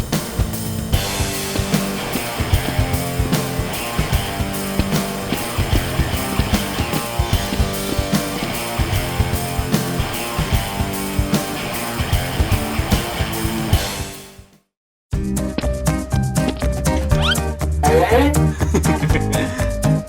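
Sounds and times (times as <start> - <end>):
rock music with guitar and drums: 0.0 - 14.5.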